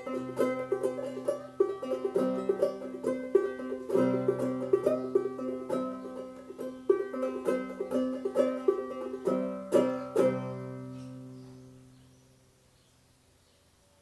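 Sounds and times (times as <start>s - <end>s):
banjo played clawhammer style: 0.0s - 11.6s
strummed banjo chords ringing: 0.0s - 12.0s.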